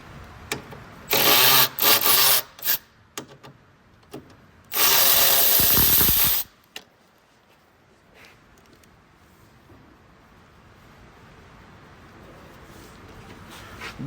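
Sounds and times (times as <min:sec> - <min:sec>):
cordless drill running: 0:04.7 - 0:06.5.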